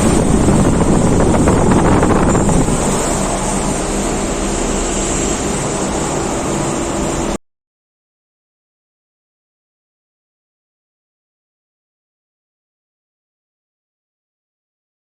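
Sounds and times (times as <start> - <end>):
air conditioner fans rushing: 0.0 - 7.4
compressor hum: 0.0 - 7.4.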